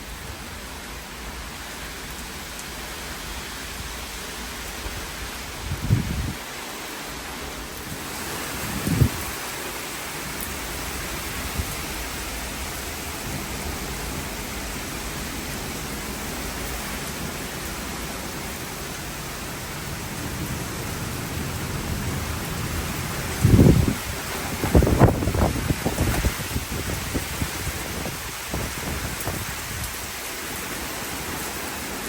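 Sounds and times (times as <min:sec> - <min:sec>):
heavy rain: 0:00.0 - 0:32.0
thunder rumble: 0:04.7 - 0:06.4, 0:07.9 - 0:09.5, 0:10.6 - 0:30.0.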